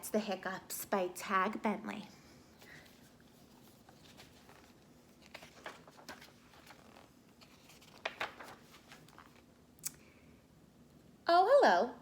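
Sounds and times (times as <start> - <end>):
book pages rustling: 2.6 - 9.5.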